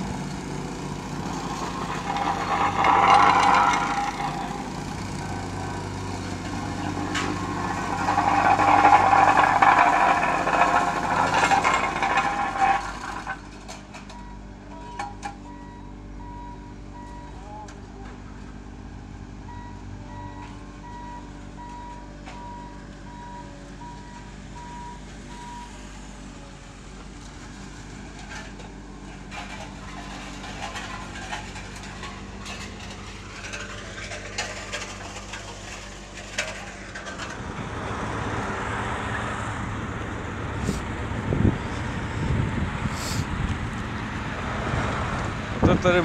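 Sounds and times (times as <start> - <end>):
truck engine running: 0.0 - 14.8, 15.4 - 46.0
scrapes and knocks: 1.0 - 14.2, 28.0 - 37.5.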